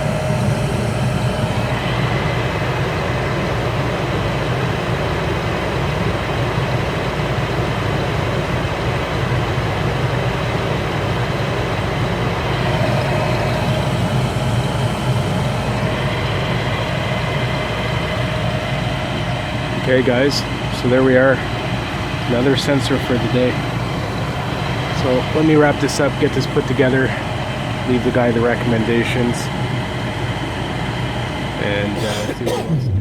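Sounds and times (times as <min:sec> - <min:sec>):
gas furnace running: 0:00.0 - 0:33.0.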